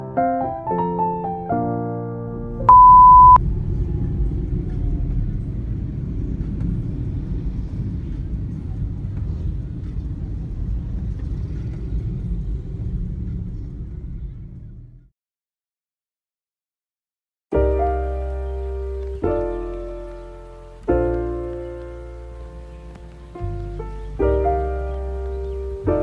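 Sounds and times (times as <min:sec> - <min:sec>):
steady low rumble: 0:02.4 - 0:15.1, 0:22.1 - 0:26.0
loud electronic beep: 0:02.7 - 0:03.4.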